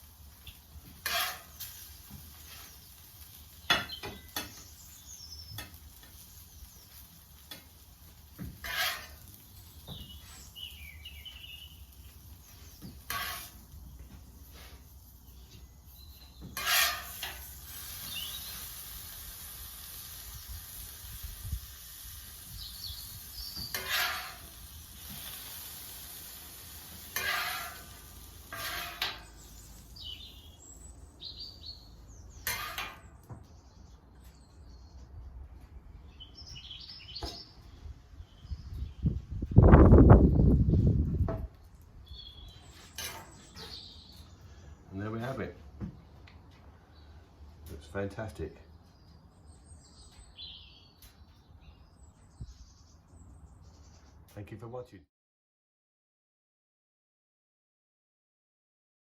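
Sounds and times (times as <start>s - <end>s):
food sizzling on a griddle: 0.0s - 30.7s
birds chirping: 2.5s - 7.8s, 8.4s - 16.8s, 18.0s - 18.7s, 22.4s - 24.0s, 29.2s - 40.8s, 41.5s - 54.4s.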